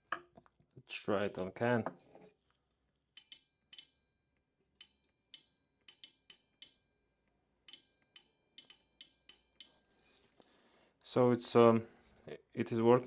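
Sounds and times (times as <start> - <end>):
faint sharp relay clicks: 3.2 - 4.0, 4.8 - 6.8, 7.7 - 9.8.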